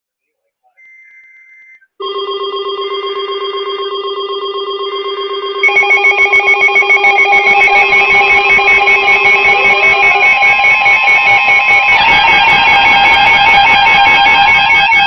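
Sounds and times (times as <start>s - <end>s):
pulsing electronic alarm ringing: 2.0s - 15.0s
faint data-burst tone: 5.3s - 14.4s.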